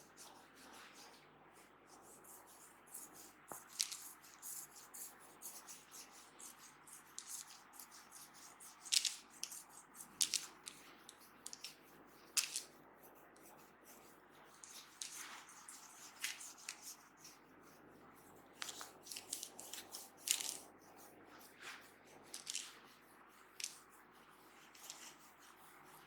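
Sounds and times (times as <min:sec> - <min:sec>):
hands rubbing hair and skin: 0:01.9 - 0:12.8, 0:13.4 - 0:17.4, 0:18.4 - 0:25.5.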